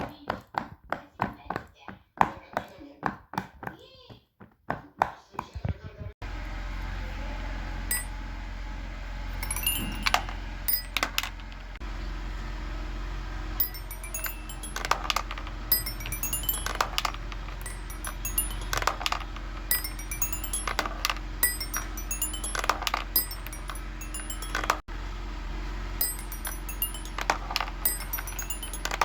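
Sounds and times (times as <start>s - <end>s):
steady low hum: 6.3s - 29.0s
fidget toys clicking and rattling: 9.4s - 11.6s, 13.6s - 24.8s, 26.0s - 29.0s.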